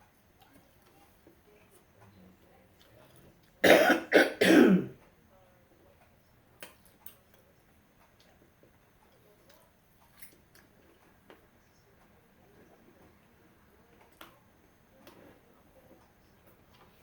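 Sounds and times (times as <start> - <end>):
woman coughing: 3.6 - 5.0.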